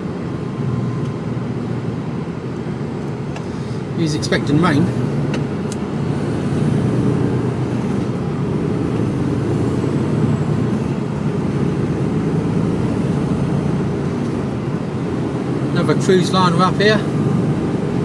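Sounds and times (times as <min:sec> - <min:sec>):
road noise: 0:00.0 - 0:18.0
truck engine droning: 0:00.0 - 0:18.0.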